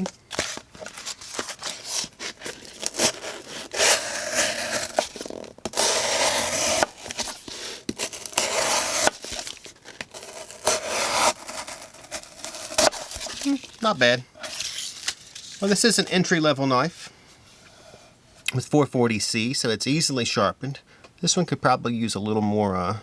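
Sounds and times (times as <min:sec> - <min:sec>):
knife slicing cardboard: 0:00.0 - 0:15.6.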